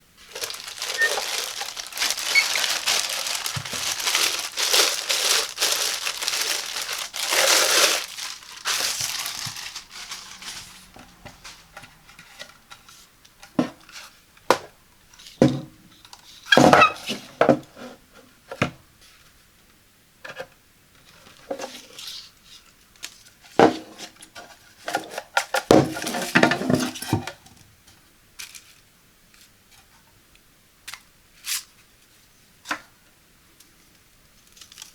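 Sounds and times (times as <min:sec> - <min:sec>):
packaging crinkling and rustling: 0:00.2 - 0:13.6, 0:24.6 - 0:27.3, 0:34.4 - 0:34.9.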